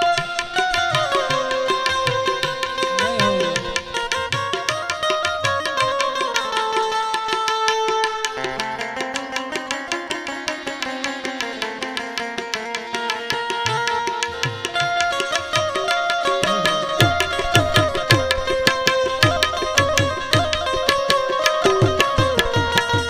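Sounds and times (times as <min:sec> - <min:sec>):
plucked-string melody: 0:00.0 - 0:23.0
hand-drum strokes: 0:00.8 - 0:04.9, 0:16.1 - 0:23.0.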